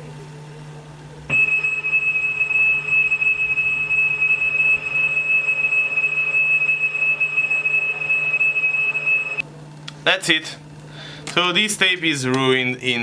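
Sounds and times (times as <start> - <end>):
steady high-pitched cassette tone: 1.3 - 9.4.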